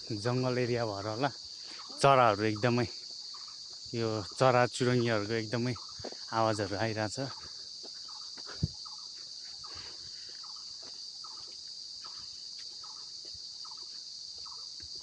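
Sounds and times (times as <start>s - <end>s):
high-pitched insect drone: 0.0s - 15.0s.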